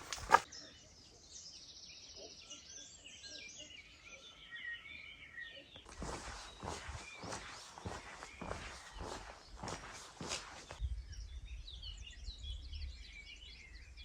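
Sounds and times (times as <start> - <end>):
footsteps on ground: 0.0 - 0.4, 5.8 - 10.8
small birds chirping and singing: 0.0 - 14.0.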